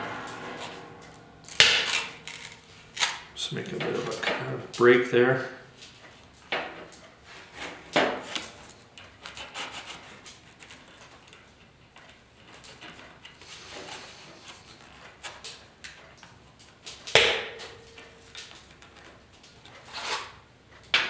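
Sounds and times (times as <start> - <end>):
sharp ringing knock: 0.0 - 2.8.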